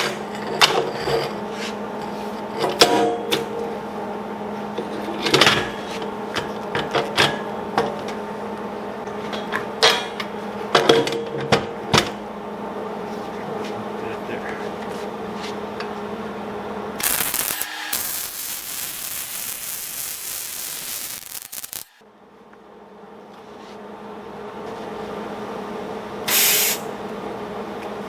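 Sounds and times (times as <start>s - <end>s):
welding machine humming: 16.9s - 22.0s
welding arc hissing: 17.0s - 22.0s, 26.3s - 26.9s.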